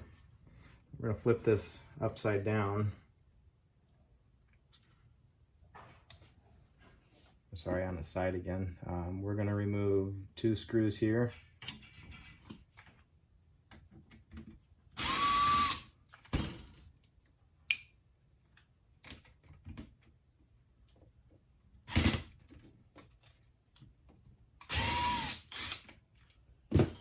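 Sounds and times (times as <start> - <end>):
electric screwdriver whine: 15.0 - 15.8, 24.7 - 25.8.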